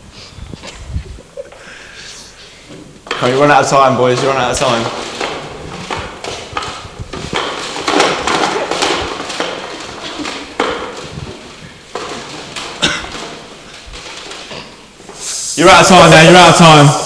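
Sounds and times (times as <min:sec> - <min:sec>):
plastic cd cases clattering: 0:03.0 - 0:15.2.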